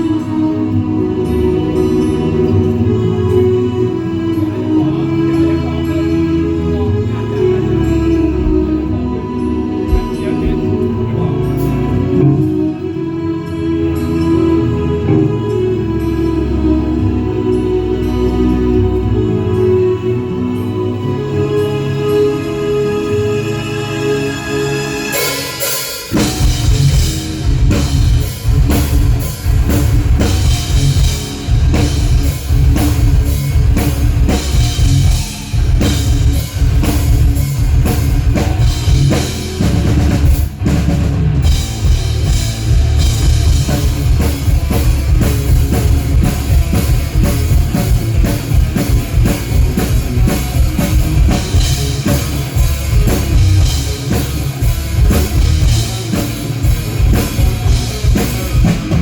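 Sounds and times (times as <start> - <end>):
guitar: 0.0 - 59.0
rock band playing: 0.0 - 59.0
drum kit: 25.0 - 59.0.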